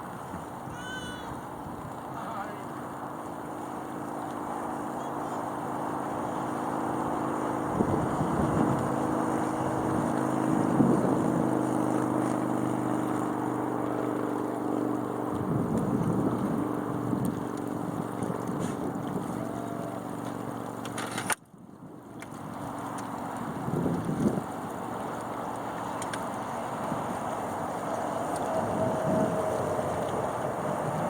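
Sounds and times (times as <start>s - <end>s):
wind rushing over microphone: 5.7s - 19.8s, 21.8s - 25.0s, 25.7s - 31.0s.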